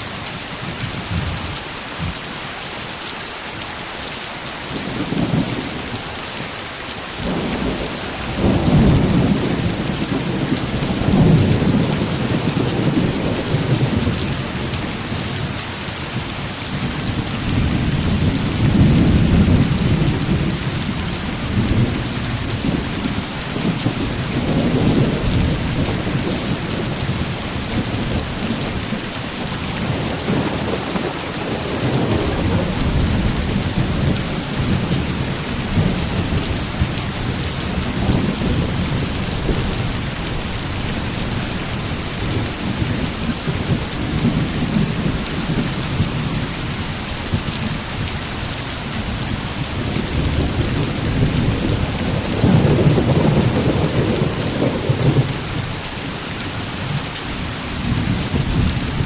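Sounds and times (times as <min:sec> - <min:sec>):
heavy rain falling: 0:00.0 - 0:59.0
thunder rumbling: 0:07.2 - 0:15.5, 0:16.7 - 0:48.0, 0:49.0 - 0:55.8.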